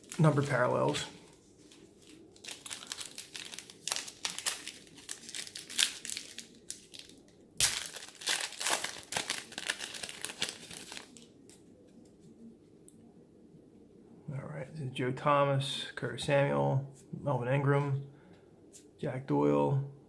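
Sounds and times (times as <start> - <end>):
plastic wrapper crinkling: 0.0 - 11.6.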